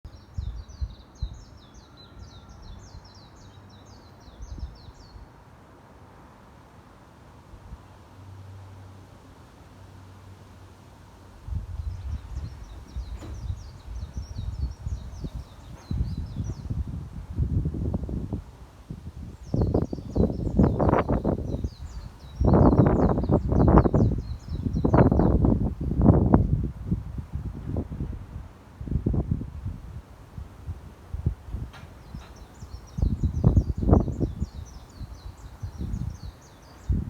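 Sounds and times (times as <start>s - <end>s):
wind buffeting microphone: 0.1s - 5.2s, 11.4s - 37.0s
songbirds singing: 0.1s - 5.3s, 11.6s - 17.4s, 19.2s - 28.1s, 29.0s - 37.0s
bird chirping: 19.4s - 25.6s.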